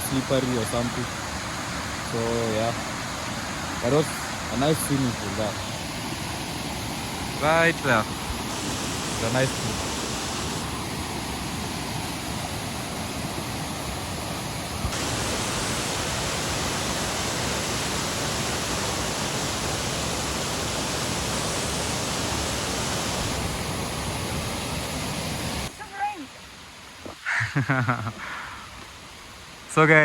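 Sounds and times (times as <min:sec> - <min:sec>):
rush of falling water: 0:00.0 - 0:30.0.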